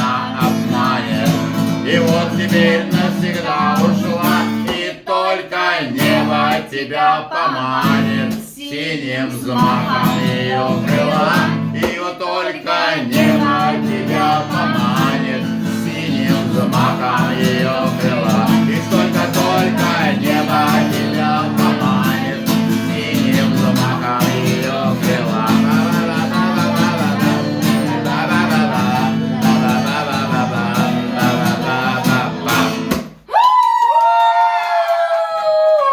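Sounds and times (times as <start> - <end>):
person singing with guitar: 0.0 - 33.2.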